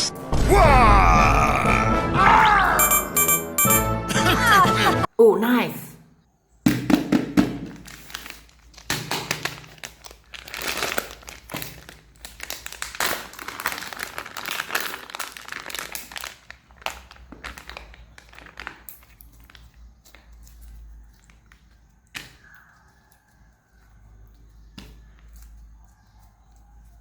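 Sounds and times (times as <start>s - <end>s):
plastic crinkling and rustling: 7.6s - 27.0s.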